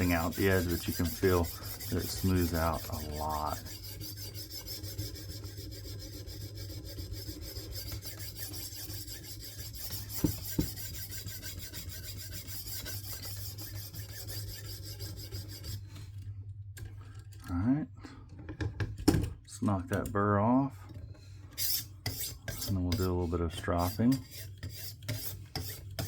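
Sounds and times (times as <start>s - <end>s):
stone rasping on knife steel: 0.0s - 15.8s, 21.6s - 26.0s.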